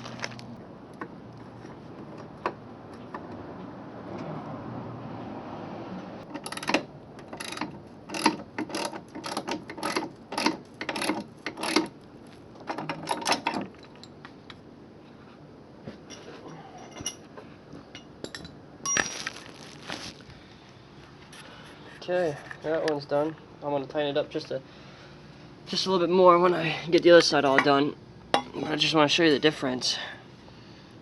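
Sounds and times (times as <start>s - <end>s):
ratchet wrench clicking: 6.3s - 11.9s.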